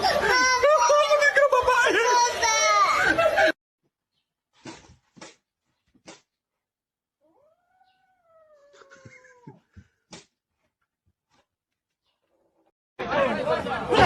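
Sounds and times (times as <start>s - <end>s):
cat meowing: 7.2s - 9.6s.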